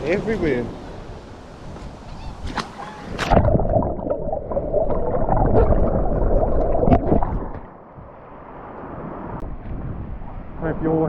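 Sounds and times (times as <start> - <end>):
seawater gurgling and rushing: 3.0 - 9.4.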